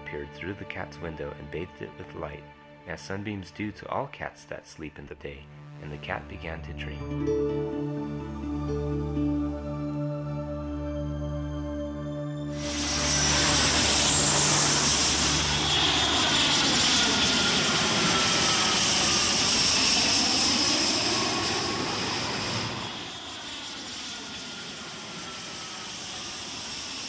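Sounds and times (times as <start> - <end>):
faint falling whines: 12.6 - 27.0
jet engines roaring: 12.6 - 27.0.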